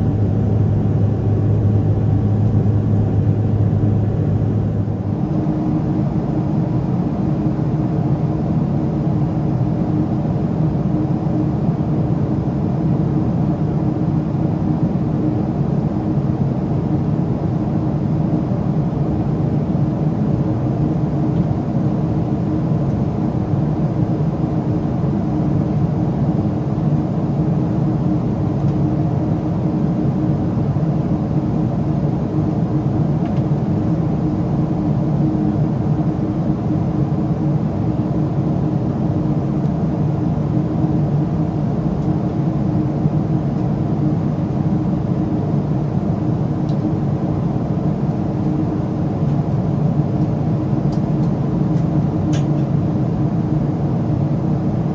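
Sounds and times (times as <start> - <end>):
low hum: 0.0 - 5.5
airplane cabin noise: 0.0 - 54.9.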